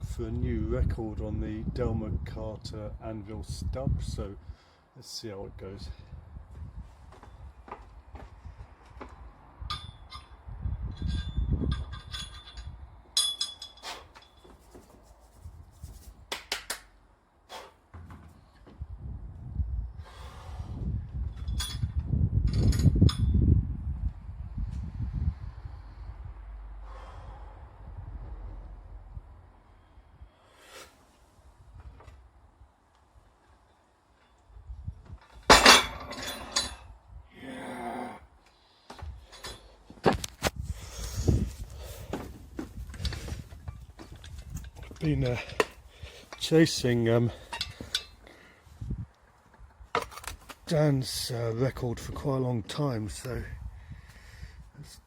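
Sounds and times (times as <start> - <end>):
metal clanking on metal: 11.0 - 14.5, 35.4 - 36.9, 43.0 - 46.6, 47.3 - 48.2
metal weight plates clinking: 11.0 - 14.5, 35.5 - 36.9
person grunting: 37.3 - 38.3.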